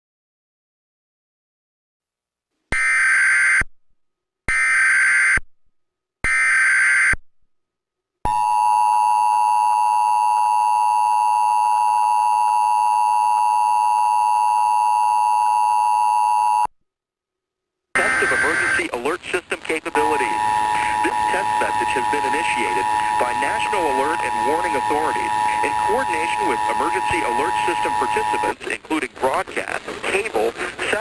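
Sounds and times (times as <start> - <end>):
digital data bursts: 18.0 - 31.0
two-tone attention signal: 19.9 - 28.6.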